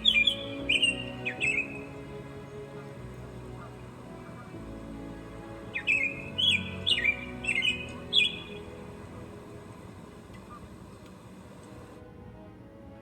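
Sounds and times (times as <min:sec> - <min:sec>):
bird chirping sharply: 0:00.0 - 0:04.6, 0:05.4 - 0:09.2
soft music of sustained notes: 0:00.0 - 0:13.0.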